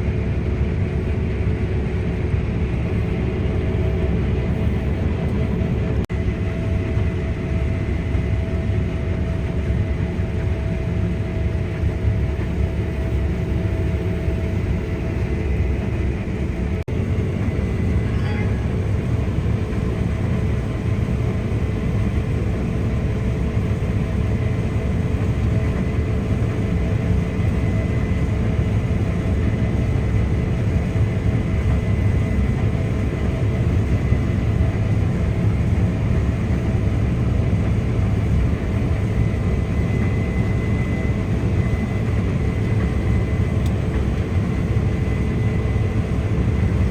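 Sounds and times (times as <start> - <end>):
combine harvester drone: 0.0 - 46.9
thin high whine: 17.0 - 20.9.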